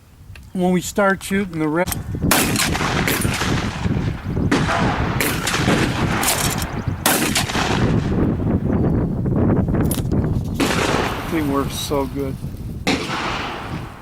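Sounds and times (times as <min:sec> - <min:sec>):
gunshots with echo: 0:02.3 - 0:08.6, 0:10.6 - 0:11.9, 0:12.9 - 0:14.0.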